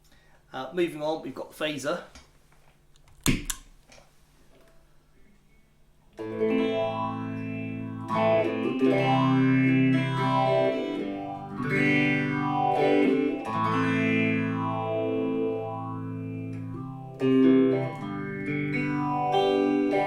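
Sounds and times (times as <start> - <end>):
electric guitar chords with phaser: 6.2 - 20.0.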